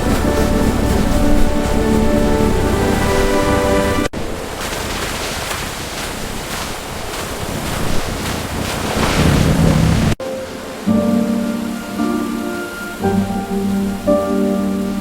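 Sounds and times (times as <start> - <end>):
waterfall rushing: 0.0 - 15.0.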